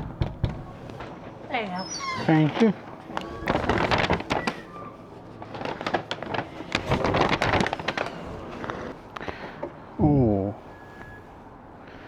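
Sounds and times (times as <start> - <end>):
rustling and clicking handling noise: 2.3 - 9.8.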